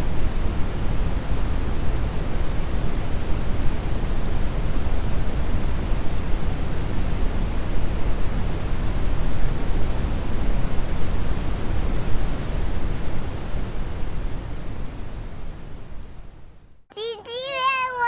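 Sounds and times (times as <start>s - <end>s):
brown noise: 0.0s - 18.0s.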